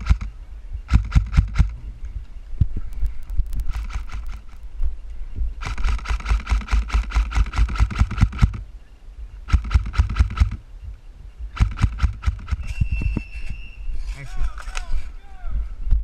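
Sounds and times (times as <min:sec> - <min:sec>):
airsoft gun firing full auto: 0:05.6 - 0:08.6, 0:09.5 - 0:10.6, 0:11.6 - 0:12.7.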